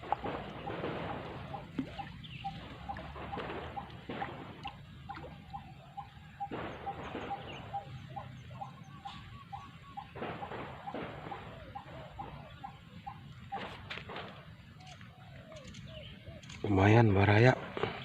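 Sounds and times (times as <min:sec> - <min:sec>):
animal chirping calls: 0:00.6 - 0:13.8.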